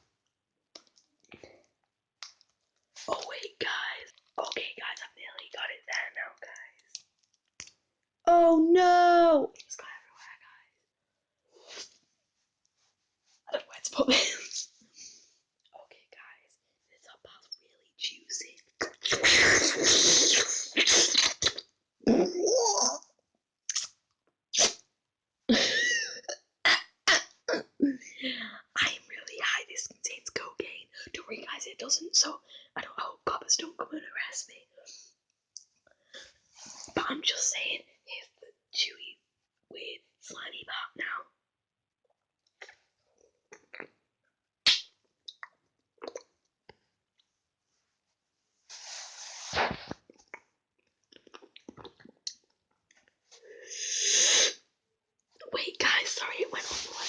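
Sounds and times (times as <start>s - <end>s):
wet mouth smacks: 23.7s - 24.0s, 24.6s - 24.8s, 44.6s - 46.3s
hiss: 53.7s - 54.5s.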